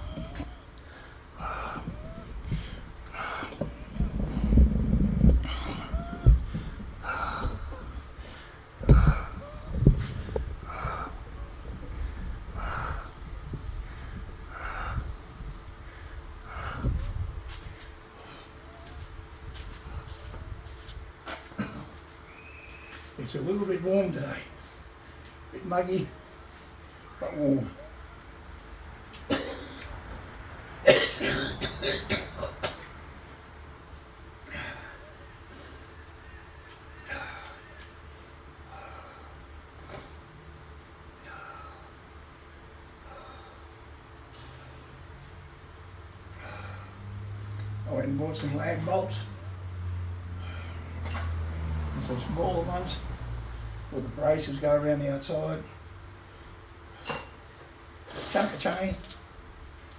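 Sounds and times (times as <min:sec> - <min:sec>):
person breathing heavily through nose: 0:00.0 - 0:18.6
dull knocks: 0:08.8 - 0:10.5
throat clearing: 0:21.3 - 0:22.0, 0:29.2 - 0:29.9
man coughing: 0:29.3 - 0:29.8, 0:30.8 - 0:32.9.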